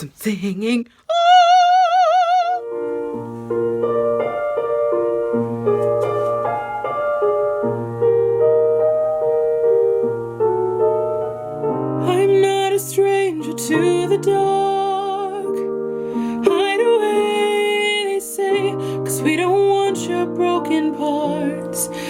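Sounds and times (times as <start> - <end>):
woman singing with vibrato: 0.0 - 2.7, 12.0 - 15.7, 16.4 - 22.0
piano chords: 1.8 - 22.0.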